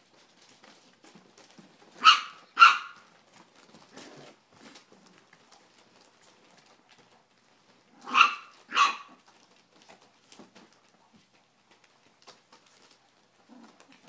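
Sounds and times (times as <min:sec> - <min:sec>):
puppy barking: 0:02.0 - 0:03.1, 0:08.0 - 0:09.2.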